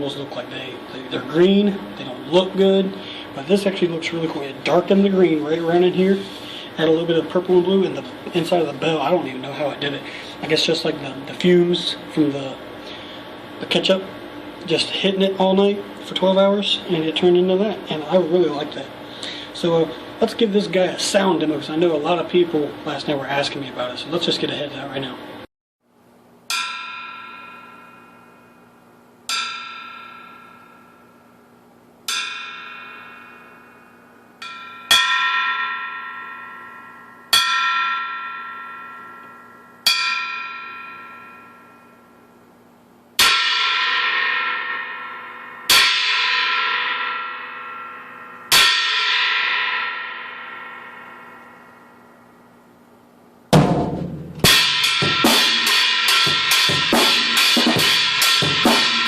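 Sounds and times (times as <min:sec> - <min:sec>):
china cymbal hits ringing: 0:26.5 - 0:42.4, 0:43.2 - 0:52.6, 0:54.4 - 0:59.0
drum kit playing a beat: 0:53.5 - 0:59.0.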